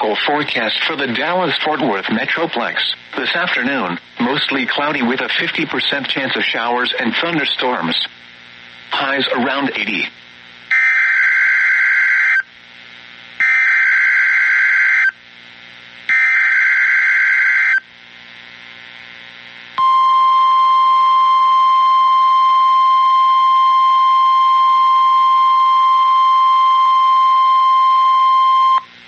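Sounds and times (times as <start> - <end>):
steady warning alarm tone: 10.7 - 12.4, 13.4 - 15.2, 16.1 - 17.8, 19.8 - 28.8.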